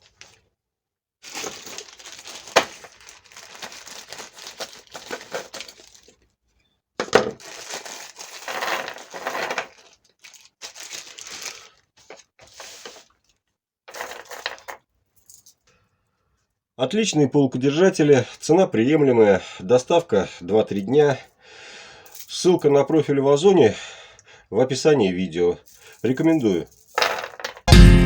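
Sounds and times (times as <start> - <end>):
packaging crinkling: 1.2 - 6.2, 7.0 - 13.4.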